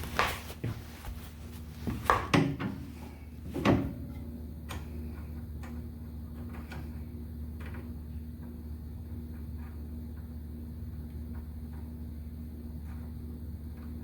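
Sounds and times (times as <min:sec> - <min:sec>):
steady low hum: 0:00.0 - 0:14.0
knocks and clunks: 0:01.9 - 0:04.8.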